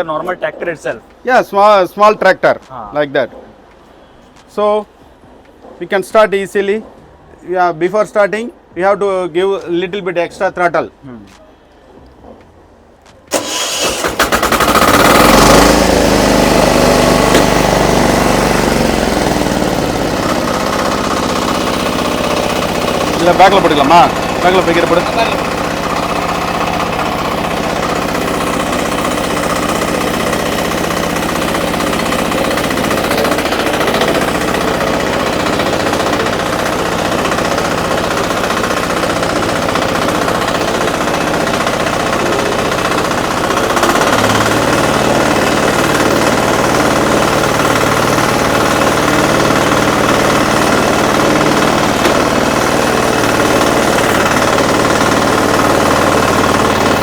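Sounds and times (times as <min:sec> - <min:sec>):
diesel engine clattering: 0:13.3 - 0:57.0.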